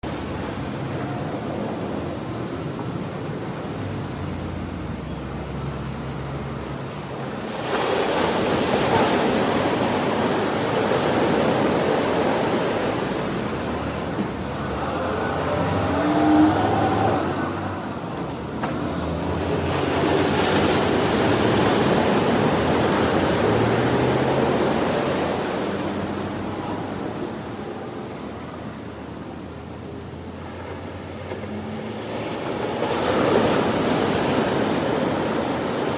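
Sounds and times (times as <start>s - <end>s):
ocean surf breaking: 7.3s - 28.0s, 31.0s - 35.9s.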